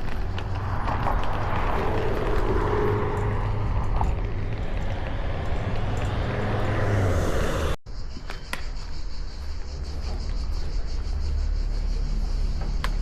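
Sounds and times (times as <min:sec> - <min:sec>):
low vehicle rumble: 0:00.0 - 0:07.8.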